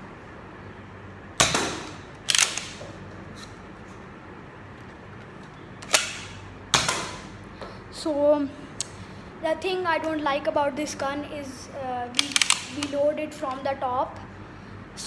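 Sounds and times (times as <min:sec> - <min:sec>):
toy blaster plastic clacks: 0:01.4 - 0:02.8, 0:12.2 - 0:13.0.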